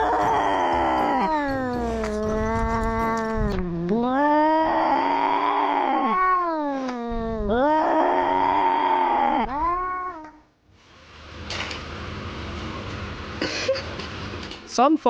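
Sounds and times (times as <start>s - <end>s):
cat yowling: 0.0s - 10.4s.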